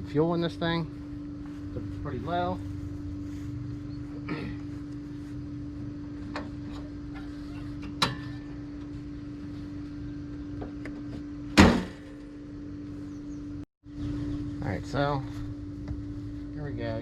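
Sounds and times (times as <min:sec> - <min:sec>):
steady low hum: 0:00.0 - 0:17.0
heavy clunk: 0:11.5 - 0:12.1.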